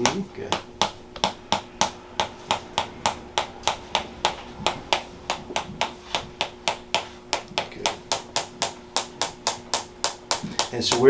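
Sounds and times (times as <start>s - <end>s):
rhythmic tapping on body: 0.0s - 11.0s.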